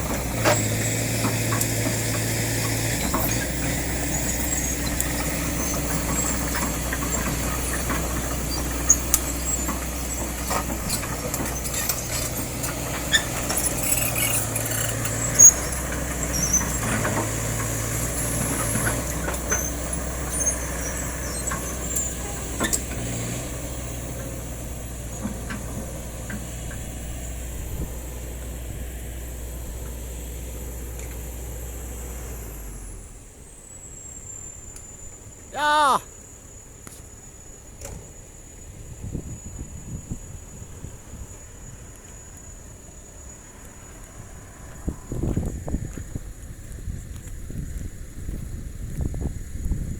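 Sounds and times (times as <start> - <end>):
diesel engine running: 0.0 - 34.2.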